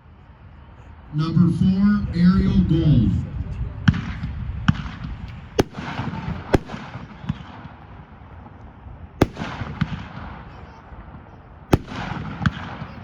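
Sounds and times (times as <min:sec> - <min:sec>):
firework bangs: 0:03.8 - 0:08.0, 0:09.2 - 0:13.0.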